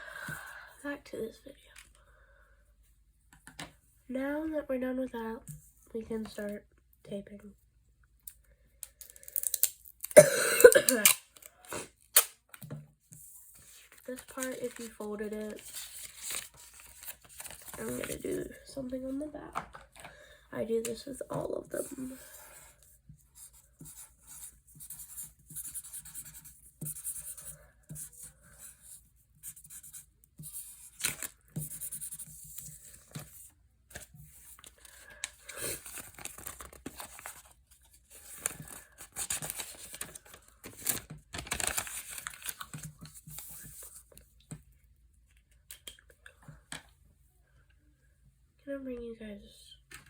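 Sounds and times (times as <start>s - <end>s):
adhesive tape tearing: 10.9s - 11.3s, 12.1s - 12.4s
paper rustling and crinkling: 11.0s - 18.8s, 30.4s - 44.6s.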